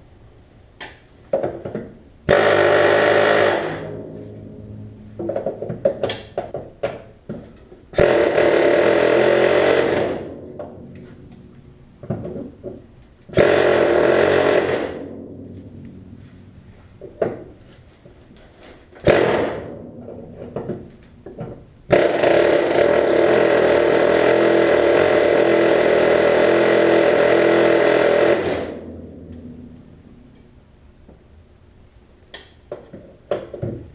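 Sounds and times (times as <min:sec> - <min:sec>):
pneumatic air chisel hammering: 0:02.3 - 0:04.1, 0:05.4 - 0:11.2, 0:13.3 - 0:15.1, 0:19.0 - 0:19.8, 0:21.9 - 0:29.0.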